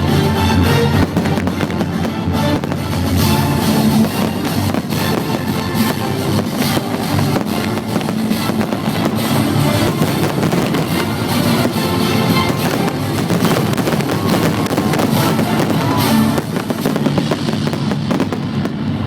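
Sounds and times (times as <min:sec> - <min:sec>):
firework bangs and crackles: 0:00.0 - 0:19.0.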